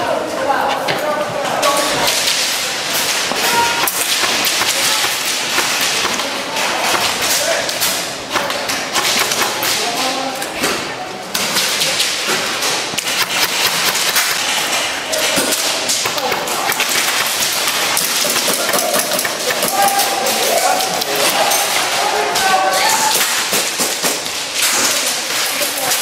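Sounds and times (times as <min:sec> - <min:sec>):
airsoft guns firing: 0:02.1 - 0:10.2, 0:11.6 - 0:22.1
pellets knocking against walls: 0:02.1 - 0:10.2, 0:11.6 - 0:21.8.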